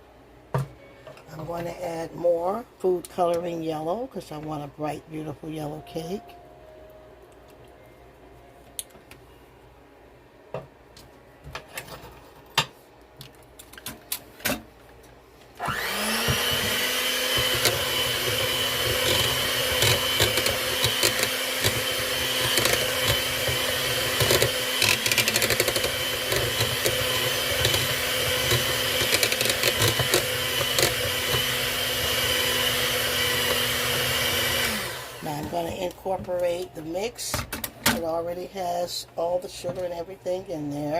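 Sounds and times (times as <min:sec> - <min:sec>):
electric mixer running: 0:15.6 - 0:35.9.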